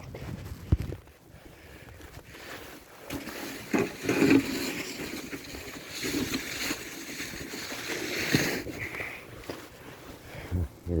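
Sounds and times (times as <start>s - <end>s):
snow shovel scraping snow: 2.3s - 9.8s.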